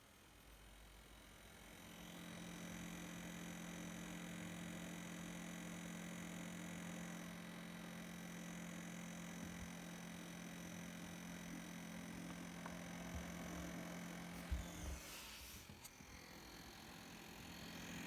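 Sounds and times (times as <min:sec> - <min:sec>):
laptop cooling fan humming: 0:07.0 - 0:18.0.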